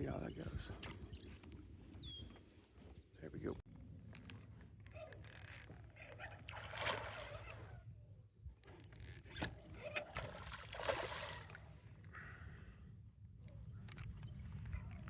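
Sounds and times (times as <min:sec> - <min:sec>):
sharp clicks: 0:05.1 - 0:05.7, 0:08.6 - 0:09.4.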